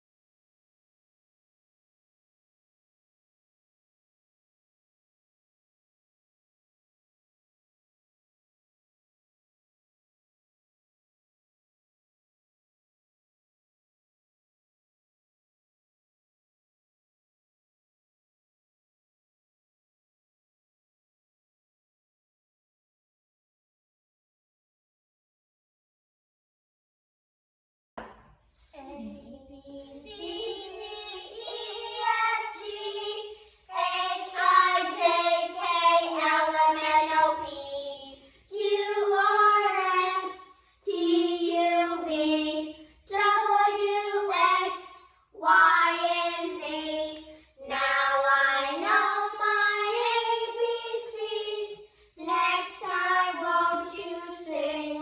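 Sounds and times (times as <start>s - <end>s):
child singing: 28.8s - 55.0s.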